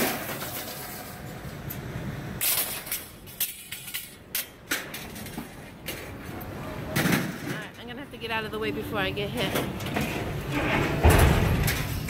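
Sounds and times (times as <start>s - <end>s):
heavy machinery engine rumble: 5.8s - 12.0s
metal clanks and bangs: 9.4s - 12.0s.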